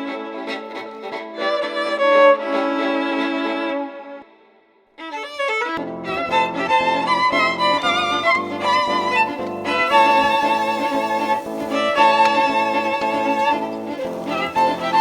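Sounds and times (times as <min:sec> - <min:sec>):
violin bowed notes: 0:00.0 - 0:15.0.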